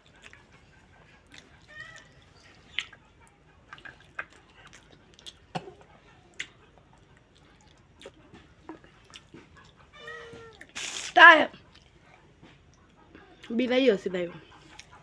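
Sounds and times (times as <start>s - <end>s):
faint cat meow: 1.6s - 2.2s, 9.9s - 10.7s.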